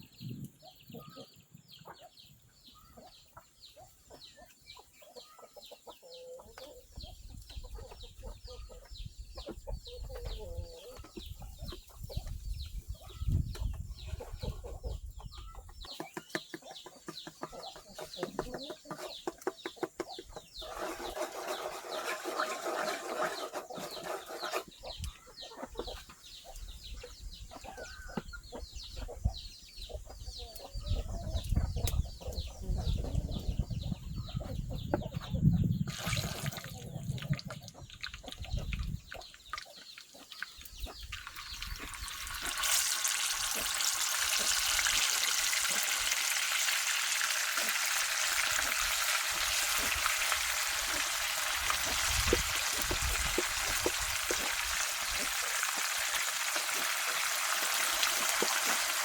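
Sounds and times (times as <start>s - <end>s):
chickens clucking: 0.0s - 59.0s.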